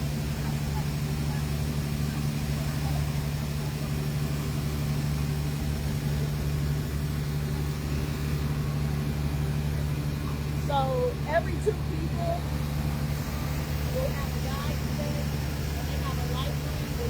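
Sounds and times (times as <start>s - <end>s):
boat engine droning: 0.0s - 17.0s.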